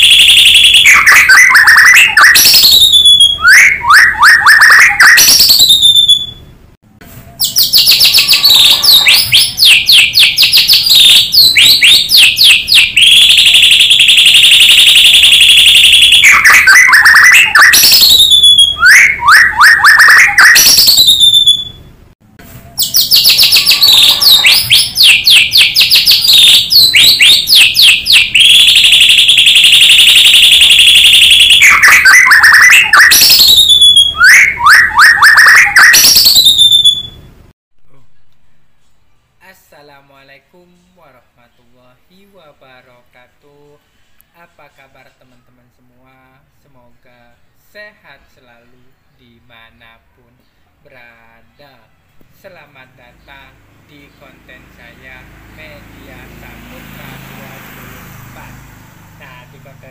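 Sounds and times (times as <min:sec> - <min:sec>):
bird singing trills and whistles: 0:00.0 - 0:06.4, 0:07.4 - 0:13.8, 0:15.6 - 0:21.9, 0:22.7 - 0:29.1, 0:31.3 - 0:37.2.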